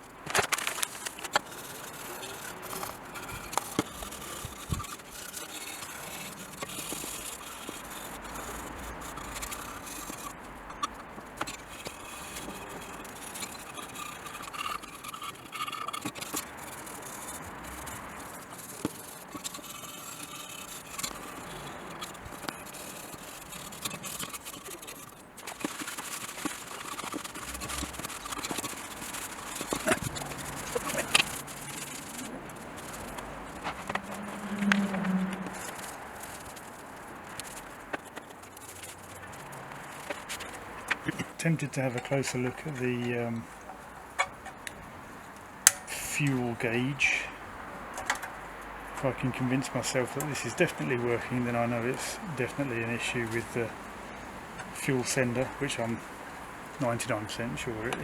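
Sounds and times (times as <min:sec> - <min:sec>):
scraping and rubbing: 0:00.0 - 0:58.0
small clicks and knocks: 0:45.6 - 0:45.9, 0:47.9 - 0:48.8.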